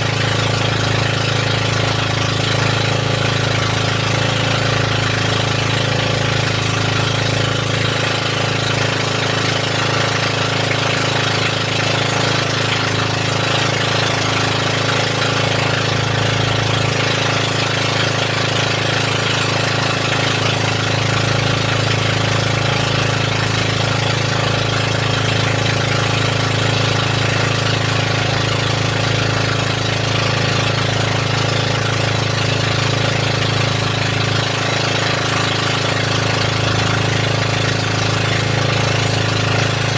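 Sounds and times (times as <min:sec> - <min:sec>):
boat engine droning: 0:00.0 - 0:39.9.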